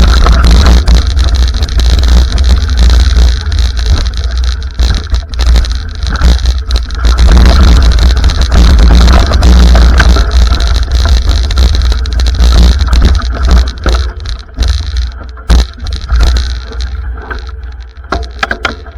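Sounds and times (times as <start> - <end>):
wind buffeting microphone: 0.0 - 13.9
camera rattling and knocking: 0.0 - 18.9.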